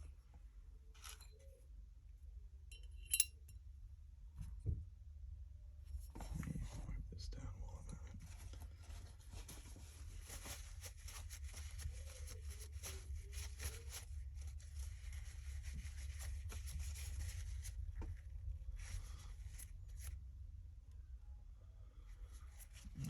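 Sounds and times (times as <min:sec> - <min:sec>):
cloth rubbing: 0:08.1 - 0:20.1.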